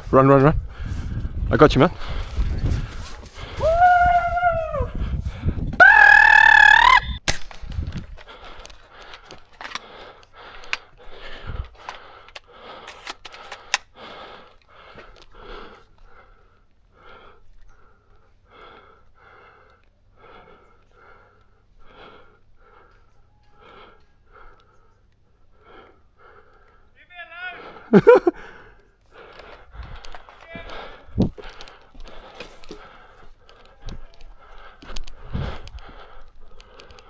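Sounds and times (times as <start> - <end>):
person panting hard: 0.0 - 5.8, 8.1 - 27.0, 27.6 - 37.0
sharp clicks: 11.7 - 14.0.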